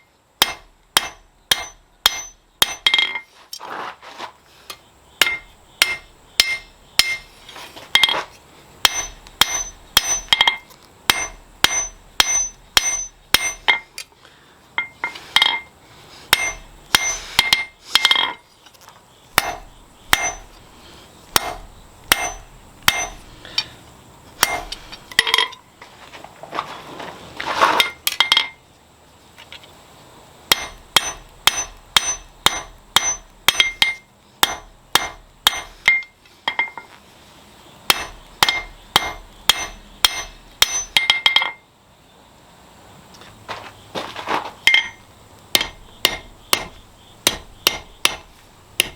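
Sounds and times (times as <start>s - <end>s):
hammer striking steel on anvil: 0.4s - 3.3s, 5.2s - 7.3s, 8.8s - 14.1s, 14.8s - 15.7s, 16.3s - 18.4s, 19.4s - 20.6s, 21.4s - 23.7s, 24.4s - 25.6s, 30.5s - 36.9s, 37.9s - 41.6s, 44.7s - 48.9s.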